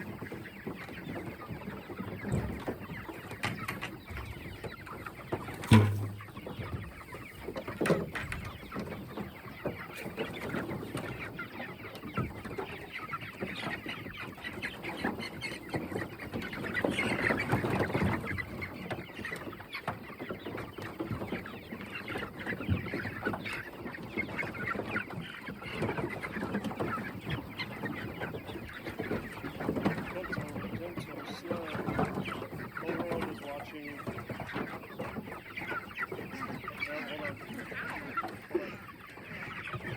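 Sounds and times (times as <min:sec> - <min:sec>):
chickens clucking: 0:00.0 - 0:39.9
loud thump: 0:05.6 - 0:06.5.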